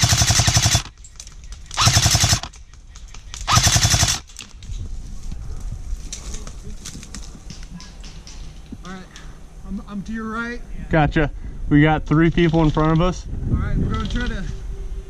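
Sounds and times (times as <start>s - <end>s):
airsoft gun full-auto bursts: 0.0s - 0.9s, 1.8s - 2.5s, 3.5s - 4.2s
distant shots: 0.0s - 1.0s, 1.7s - 2.5s, 3.4s - 4.2s.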